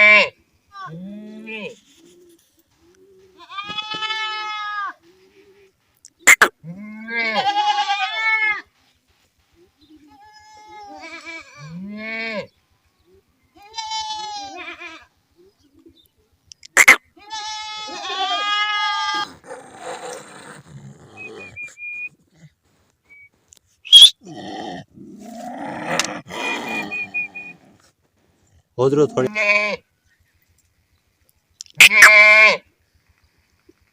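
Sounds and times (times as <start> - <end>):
goats bleating: 3.3 - 5.1, 6.6 - 8.6, 10.1 - 12.5, 13.6 - 15.1, 17.2 - 19.5, 29.0 - 29.8.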